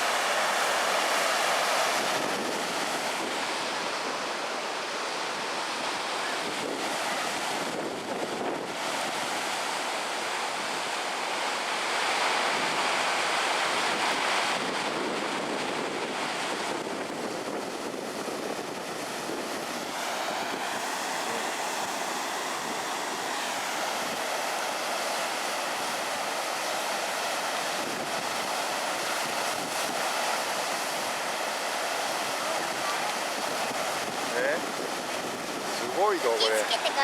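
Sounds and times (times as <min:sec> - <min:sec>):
river water rushing: 0:00.0 - 0:37.0
wind buffeting microphone: 0:01.7 - 0:04.5, 0:05.6 - 0:09.5, 0:12.5 - 0:24.5, 0:32.6 - 0:37.0.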